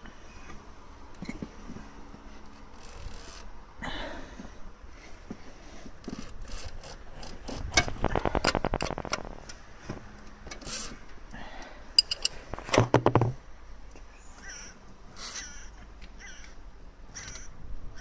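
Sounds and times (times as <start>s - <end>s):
hand tools clicking on metal: 12.0s - 12.8s.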